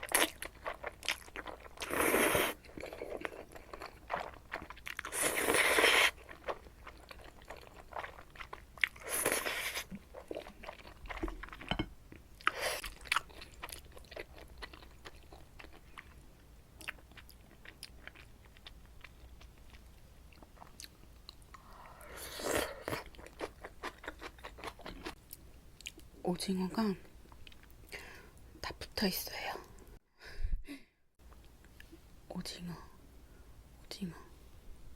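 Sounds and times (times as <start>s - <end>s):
wet chewing: 0.0s - 16.2s, 22.4s - 26.1s
noodle slurps: 1.8s - 2.6s, 5.1s - 6.2s.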